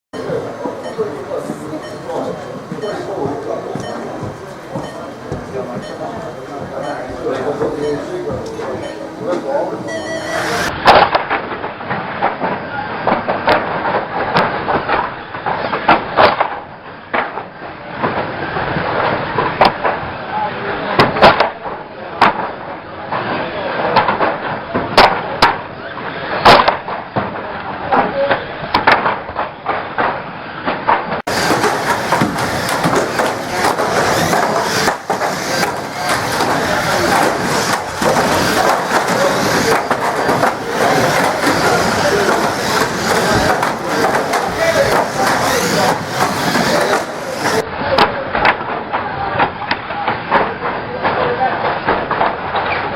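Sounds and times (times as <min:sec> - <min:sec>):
racing cars mechanical racket: 0:00.2 - 0:52.9
car bodywork banging: 0:28.7 - 0:50.6
racing car engines: 0:31.3 - 0:47.6.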